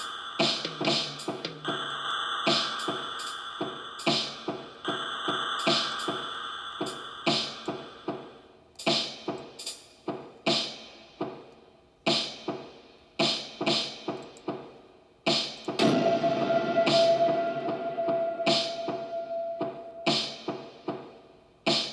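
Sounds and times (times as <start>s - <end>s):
drum machine beat: 0.0s - 21.9s
held synth tone: 15.8s - 20.4s.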